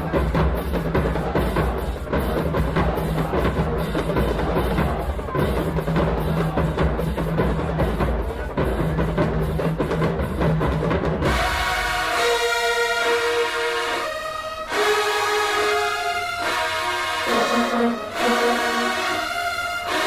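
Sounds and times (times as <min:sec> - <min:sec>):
rapid drum beat: 0:00.0 - 0:12.6
marching band playing: 0:00.0 - 0:20.0.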